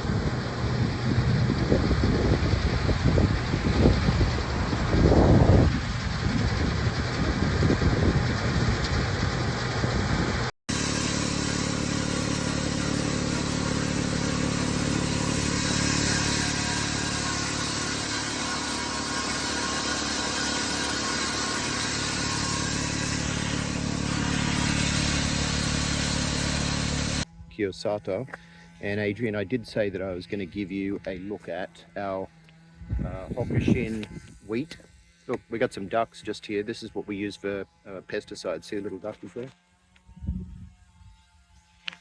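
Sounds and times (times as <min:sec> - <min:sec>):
wind buffeting microphone: 0:00.0 - 0:10.5, 0:32.8 - 0:34.5, 0:40.1 - 0:41.0
vehicle engine droning: 0:00.0 - 0:34.6.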